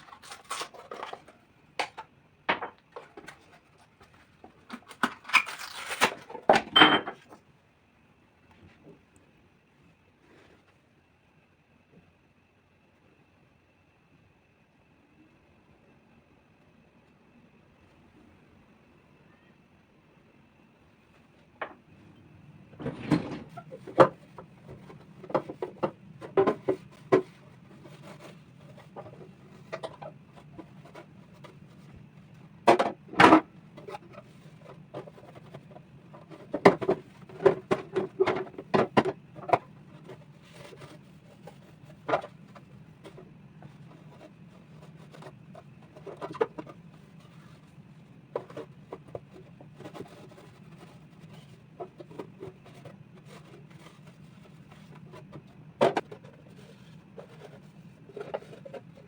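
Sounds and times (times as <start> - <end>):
containers clicking and clattering: 22.8 - 31.8, 32.6 - 59.0.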